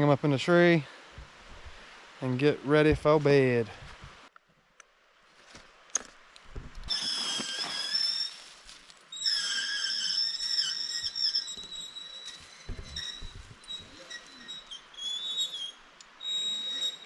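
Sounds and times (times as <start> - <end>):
low thumps: 6.5 - 6.9.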